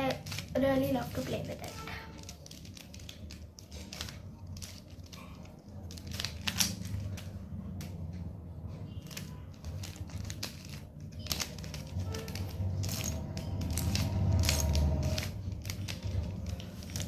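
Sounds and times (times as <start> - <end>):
puzzle cube clicking: 5.8 - 8.0.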